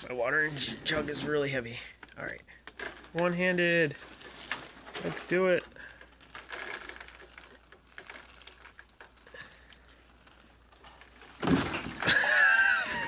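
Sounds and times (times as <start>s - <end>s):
water pouring onto soil: 3.1s - 11.5s.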